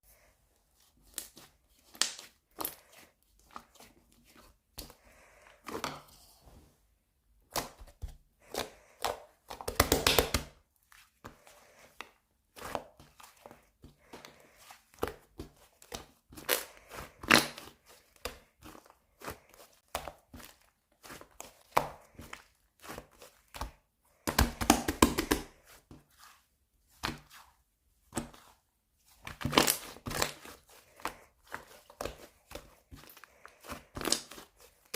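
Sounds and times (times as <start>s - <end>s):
slime clay squeezed by hand: 7.5s - 34.9s.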